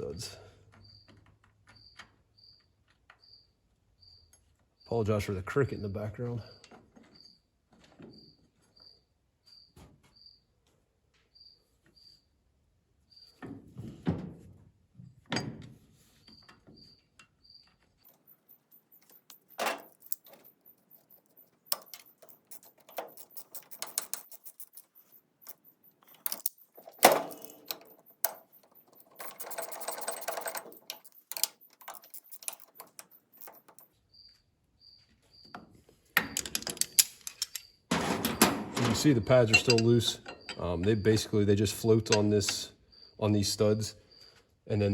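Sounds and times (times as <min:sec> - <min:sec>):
cricket chirping: 0:03.2 - 0:04.3, 0:17.4 - 0:35.5, 0:42.1 - 0:44.3
rapid clicks of hand tools: 0:18.1 - 0:33.8
metallic clinks and knocks: 0:18.1 - 0:33.9, 0:36.2 - 0:38.5, 0:39.4 - 0:40.7.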